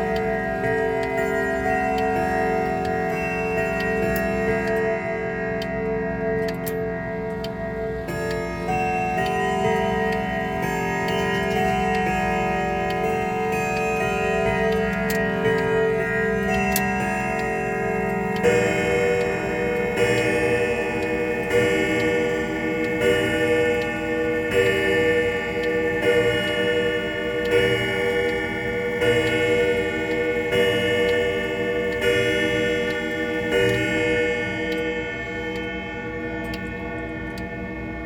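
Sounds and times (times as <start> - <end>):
grandfather clock chimes striking: 0.0 - 38.0.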